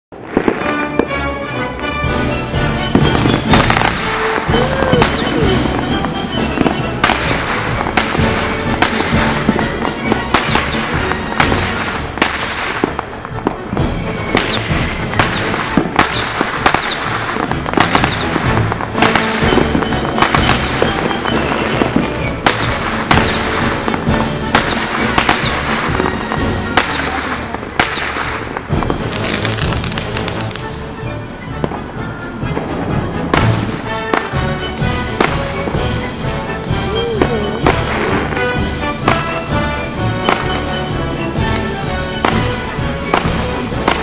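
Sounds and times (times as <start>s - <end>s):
fireworks crackling and sizzling: 0.1s - 44.0s
fireworks shells bursting with bangs: 0.1s - 44.0s.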